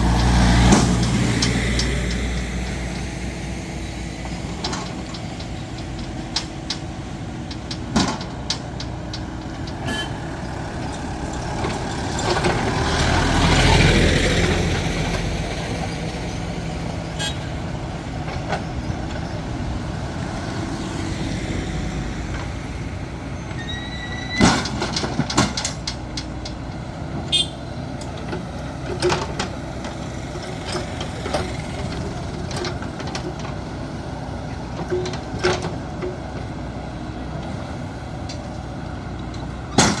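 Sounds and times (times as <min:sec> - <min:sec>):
vehicle passing: 0:00.0 - 0:03.9, 0:10.5 - 0:17.9
diesel engine running: 0:00.0 - 0:40.0
metallic clanks and knocks: 0:04.2 - 0:15.2, 0:23.5 - 0:27.3, 0:28.0 - 0:33.6, 0:39.2 - 0:40.0.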